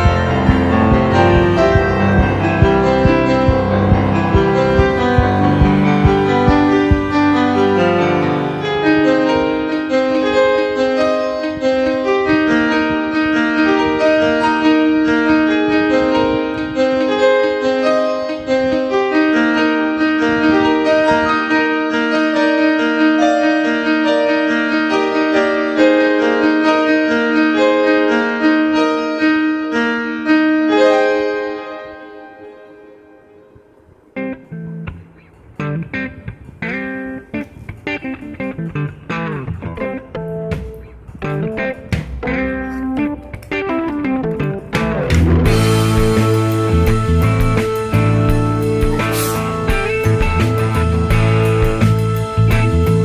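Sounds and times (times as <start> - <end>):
gentle piano melody: 0.0 - 53.0.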